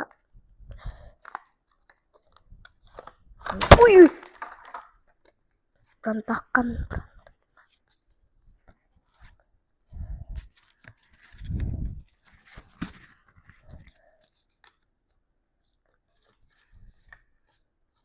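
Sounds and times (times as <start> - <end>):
card pack crackling and tearing: 2.9 - 4.8.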